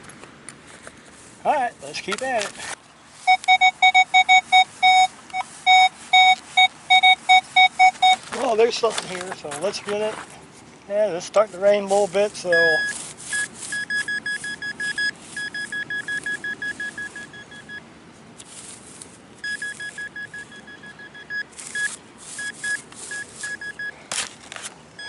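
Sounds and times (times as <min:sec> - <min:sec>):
scraping noises: 0:00.6 - 0:02.8, 0:07.9 - 0:17.2
metal detector rapid beeping: 0:03.2 - 0:08.3, 0:12.5 - 0:17.8, 0:19.4 - 0:24.0.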